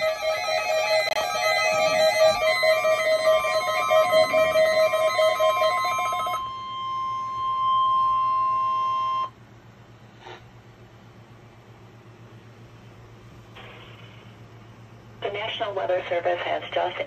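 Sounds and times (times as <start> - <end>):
steady warning alarm tone: 0.0 - 9.4
warbling electronic alarm: 0.0 - 9.4.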